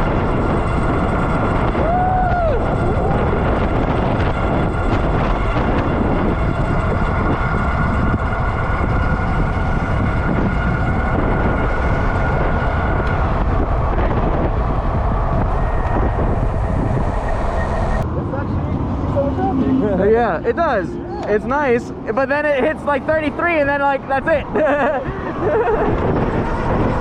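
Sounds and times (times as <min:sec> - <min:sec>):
electric motor whine: 0:00.0 - 0:18.1
wind buffeting microphone: 0:00.0 - 0:27.0.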